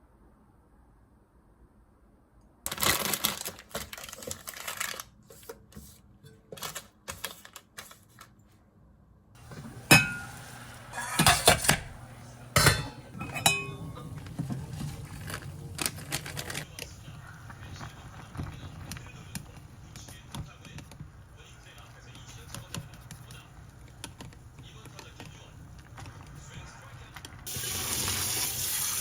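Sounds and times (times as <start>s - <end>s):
dishes and utensils clattering: 9.4s - 17.0s
rustling: 9.4s - 27.4s
low steady hum: 9.4s - 27.5s.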